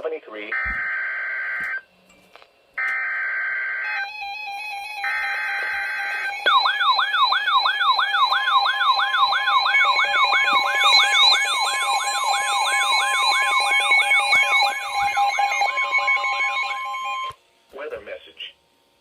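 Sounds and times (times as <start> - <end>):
warbling electronic alert siren: 0.5 - 1.9, 2.8 - 17.4
buzzy digital header tones: 2.8 - 17.4.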